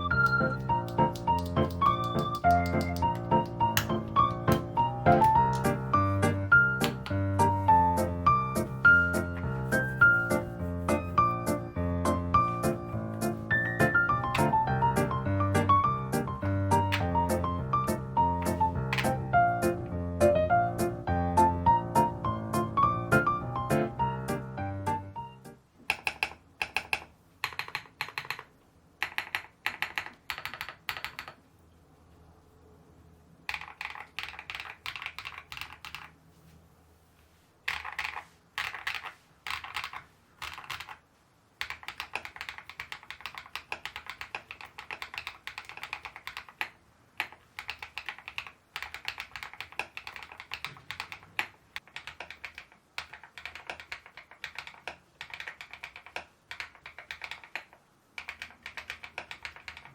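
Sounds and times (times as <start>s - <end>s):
mechanical keyboard typing: 0.0s - 7.3s, 13.6s - 17.8s, 18.4s - 19.4s, 25.8s - 31.4s, 33.4s - 36.2s, 37.7s - 41.0s, 41.6s - 59.9s.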